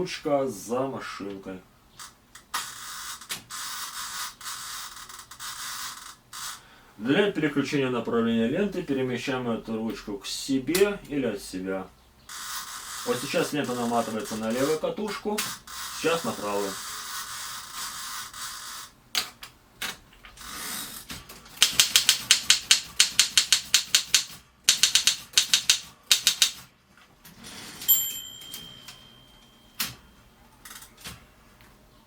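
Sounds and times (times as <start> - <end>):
typewriter keystrokes: 21.5 - 26.7
typewriter bell ringing: 27.8 - 30.2.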